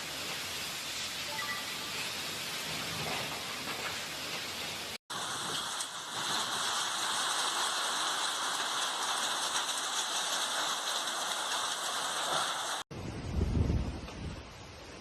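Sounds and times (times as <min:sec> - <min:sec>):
wind-driven rain hiss: 0:00.0 - 0:15.0
gusting wind: 0:05.2 - 0:15.0.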